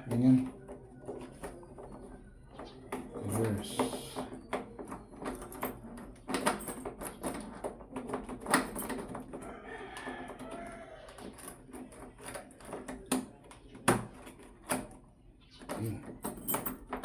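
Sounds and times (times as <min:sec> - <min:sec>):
rooster crowing: 0:09.4 - 0:11.2.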